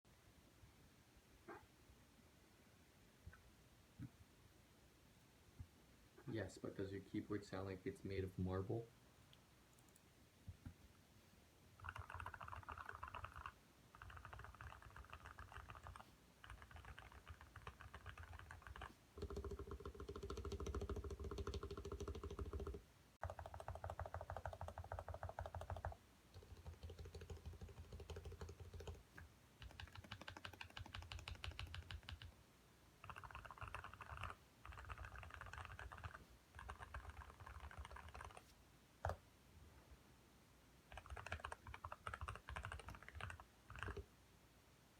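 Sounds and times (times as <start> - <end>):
fast typing on keyboard: 11.8 - 29.0, 29.6 - 32.3, 33.0 - 38.4, 40.9 - 44.0.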